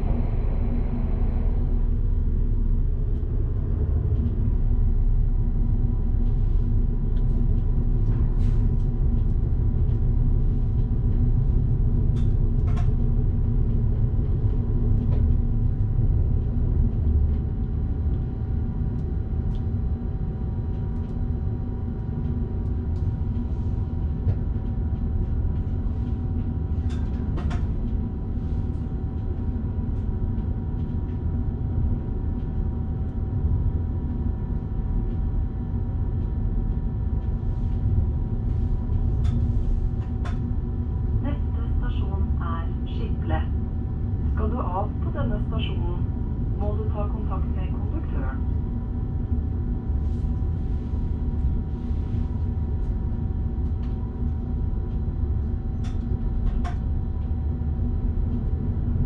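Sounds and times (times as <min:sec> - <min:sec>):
train wheels rumbling on rails: 0:00.0 - 0:05.2.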